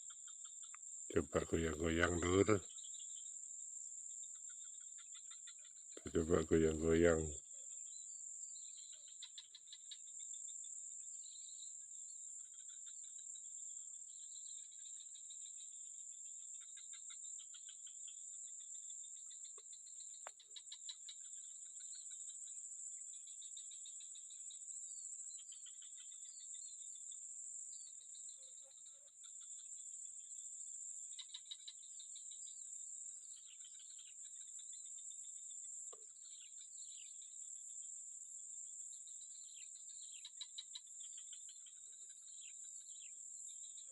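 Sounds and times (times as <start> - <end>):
insect chorus drone: 0.0 - 43.9.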